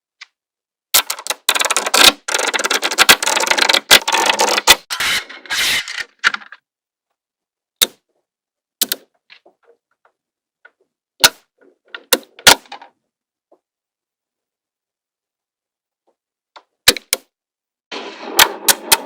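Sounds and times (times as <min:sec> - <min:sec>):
magnetic balls clacking together: 0:01.0 - 0:04.9.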